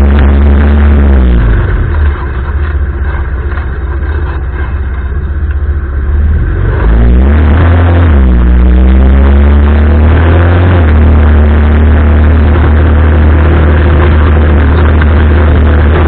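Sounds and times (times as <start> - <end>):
atv engine running: 0.0 - 16.0.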